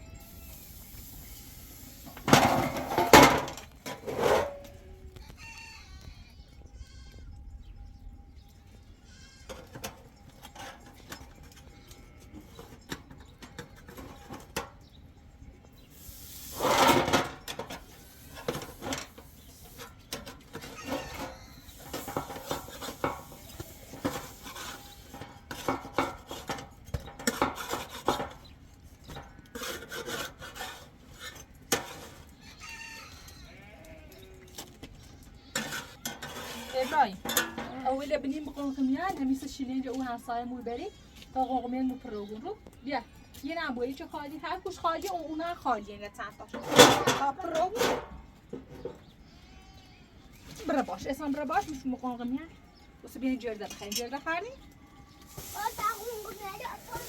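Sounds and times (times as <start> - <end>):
goats bleating: 9.0 - 9.5, 32.7 - 34.6, 49.3 - 50.1.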